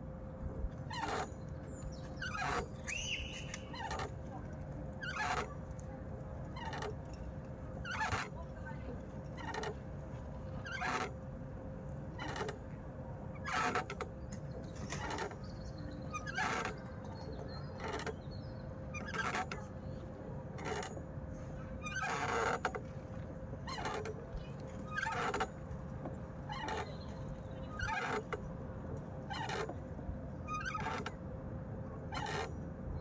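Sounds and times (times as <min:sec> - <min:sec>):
swing creaking: 0:00.8 - 0:08.5, 0:09.2 - 0:09.8, 0:10.6 - 0:11.3, 0:12.2 - 0:12.7, 0:13.4 - 0:19.8, 0:20.5 - 0:21.2, 0:21.8 - 0:28.5, 0:29.2 - 0:31.3, 0:32.0 - 0:32.5.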